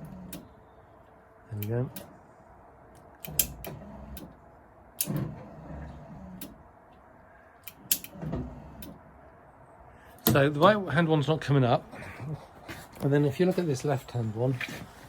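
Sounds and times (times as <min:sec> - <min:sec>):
low motor hum: 0:00.0 - 0:09.9
headlight mechanism clicks and clunks: 0:02.9 - 0:04.4, 0:05.0 - 0:07.0, 0:07.6 - 0:09.0.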